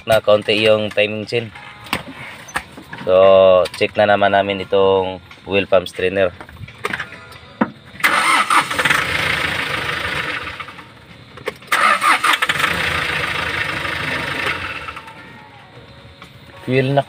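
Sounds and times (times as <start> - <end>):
diesel engine cranking: 5.6 - 17.0.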